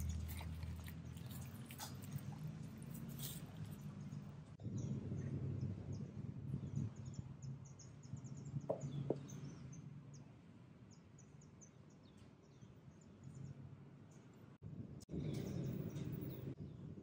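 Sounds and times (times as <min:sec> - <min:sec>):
small birds chirping: 0:00.0 - 0:10.3.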